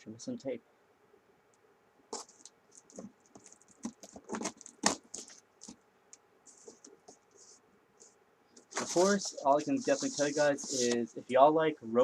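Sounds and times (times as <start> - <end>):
cardboard box scratching and rustling: 8.7 - 11.0.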